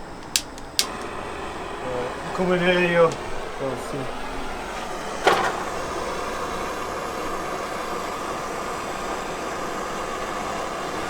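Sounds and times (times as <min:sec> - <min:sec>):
blowtorch flame hissing: 0:00.0 - 0:11.0
igniter click: 0:00.1 - 0:01.2.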